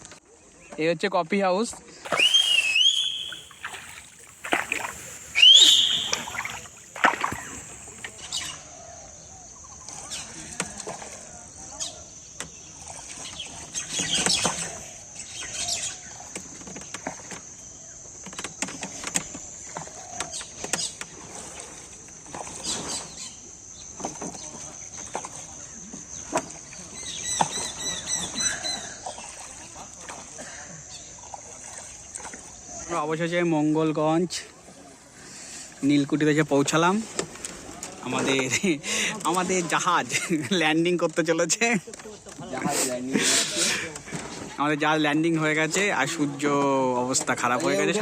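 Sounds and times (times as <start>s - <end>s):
birds calling: 2.1s - 8.3s
oars splashing in water: 2.1s - 8.5s, 24.0s - 32.9s.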